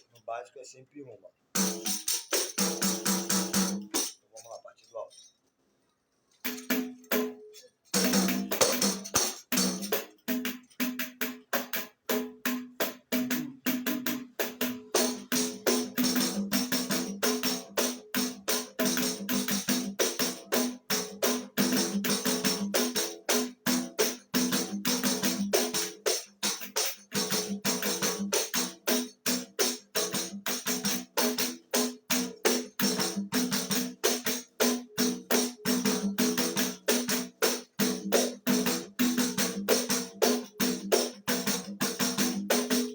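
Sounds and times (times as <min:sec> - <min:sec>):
tamborim beaten with a stick: 0:06.5 - 0:16.7.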